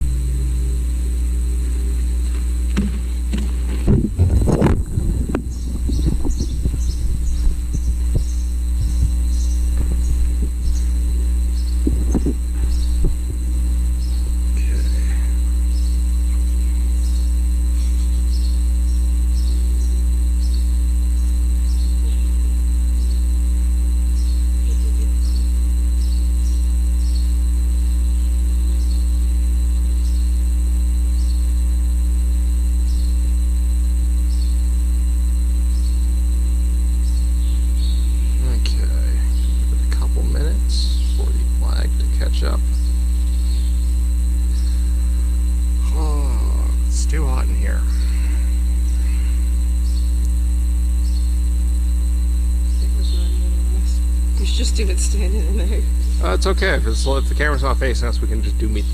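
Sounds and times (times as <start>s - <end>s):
faint voices: 0.0s - 3.3s, 14.5s - 15.6s, 38.4s - 42.6s, 45.8s - 49.6s
electrical mains hum: 0.0s - 58.9s.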